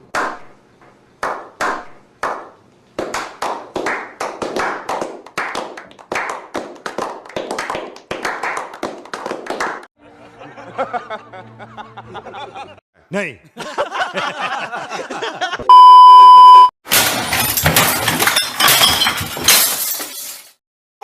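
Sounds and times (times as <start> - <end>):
hand clapping: 1.2 - 9.9.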